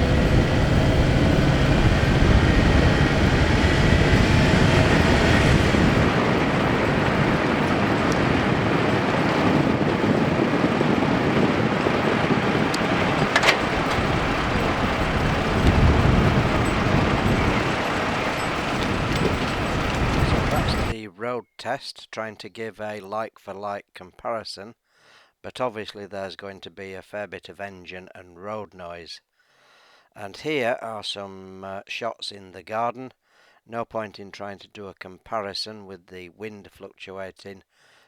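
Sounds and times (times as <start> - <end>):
van driving at speed: 0.0 - 20.9.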